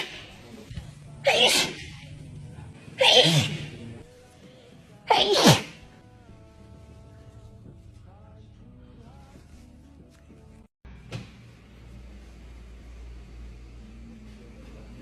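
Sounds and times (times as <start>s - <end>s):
person sneezing: 1.2s - 2.0s, 3.0s - 3.9s, 5.1s - 5.9s.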